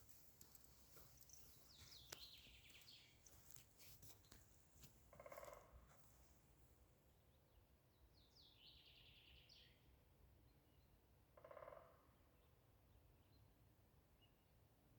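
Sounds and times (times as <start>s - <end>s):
birds chirping: 0.0s - 3.6s
soft clicks: 0.4s - 2.8s.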